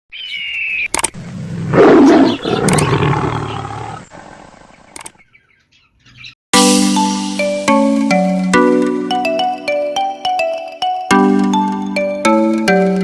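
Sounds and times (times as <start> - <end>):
loud animal roar: 1.2 - 4.7.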